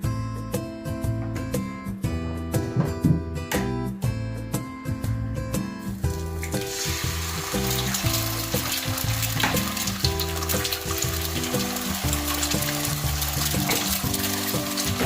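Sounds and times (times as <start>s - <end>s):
background music: 0.0s - 15.0s
food sizzling in a pan: 6.0s - 15.0s.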